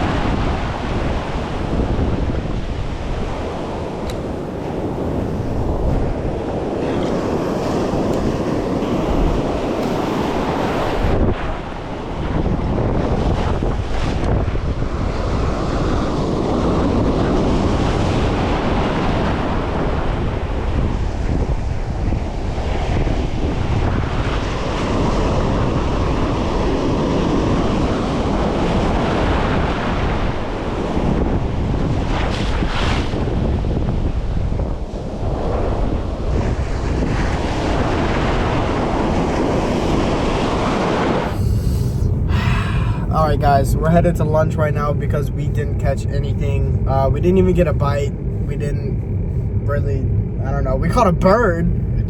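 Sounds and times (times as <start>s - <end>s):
ocean surf breaking: 0.0s - 21.1s, 34.9s - 50.1s
wind buffeting microphone: 0.0s - 52.0s.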